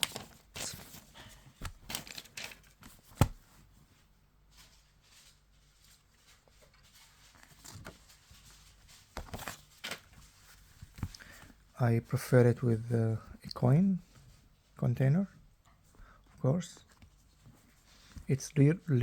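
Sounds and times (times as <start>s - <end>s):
packaging rustling: 0.0s - 3.5s.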